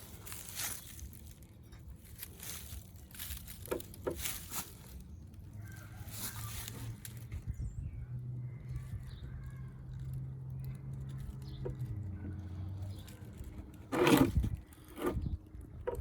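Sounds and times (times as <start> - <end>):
loud clattering or scraping: 13.3 - 15.3.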